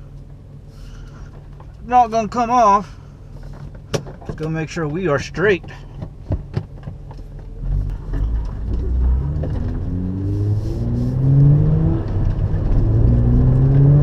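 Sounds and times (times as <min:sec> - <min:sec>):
car engine accelerating: 0:07.4 - 0:14.0.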